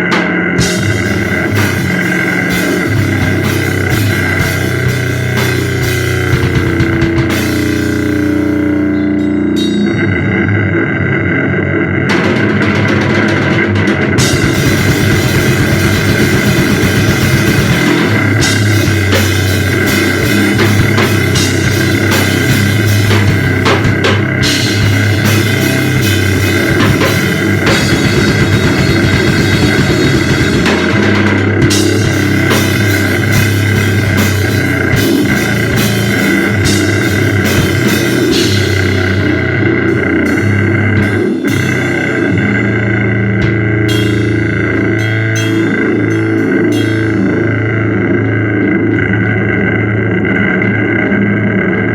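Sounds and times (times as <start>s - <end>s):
fast drum-kit hits and cymbals: 0.0s - 10.8s, 12.0s - 49.5s
distorted noise wall: 0.0s - 51.9s
high feedback-like tones: 14.2s - 50.0s.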